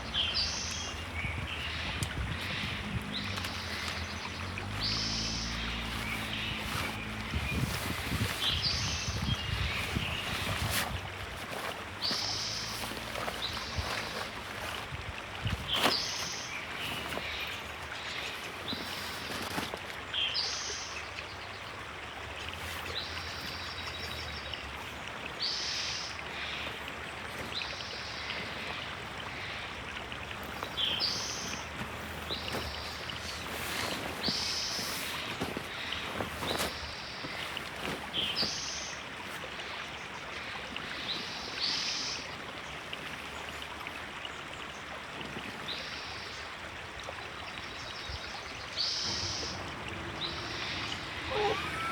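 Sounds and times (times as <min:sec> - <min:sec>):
river water flowing: 0:00.0 - 0:51.9
bird chirping: 0:48.6 - 0:51.9.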